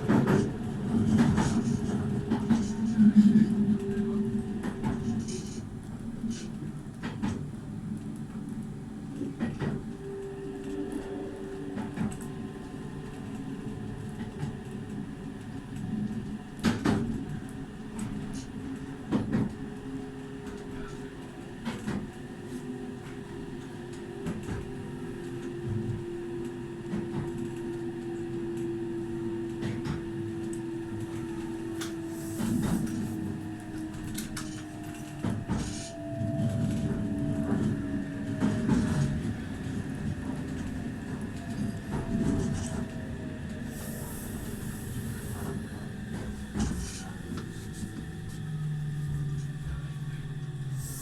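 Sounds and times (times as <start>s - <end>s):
rail clicks: 0.0s - 51.0s
train wheels clacking: 20.4s - 48.4s
electric train motor whine: 23.2s - 51.0s
hiss: 50.8s - 51.0s.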